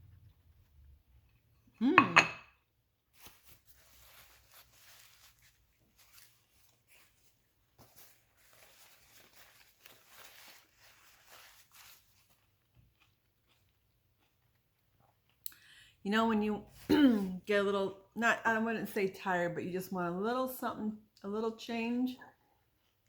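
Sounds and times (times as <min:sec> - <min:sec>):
faint chewing mouth noises: 0:11.7 - 0:15.8, 0:22.3 - 0:23.0.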